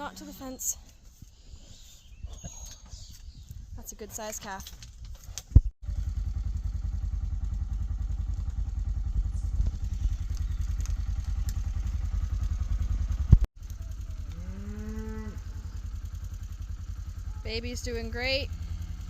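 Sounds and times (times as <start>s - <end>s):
small engine running: 5.8s - 19.0s
cow mooing: 14.1s - 15.8s.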